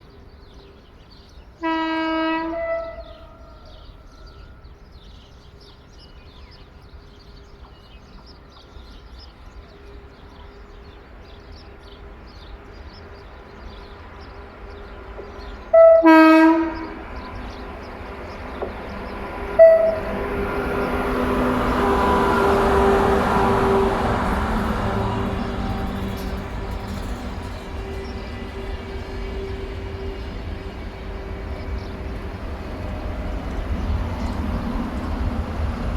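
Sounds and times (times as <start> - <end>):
train rumbling: 0.0 - 35.9
locomotive horn blasts: 1.6 - 3.4, 15.7 - 17.4, 19.5 - 26.9.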